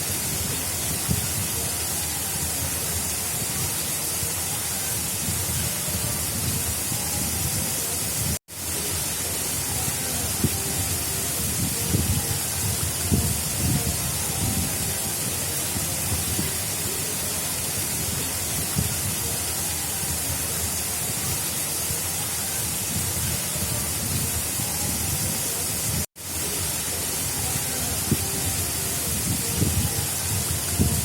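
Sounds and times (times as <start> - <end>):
water rushing in a channel: 0.0 - 31.0.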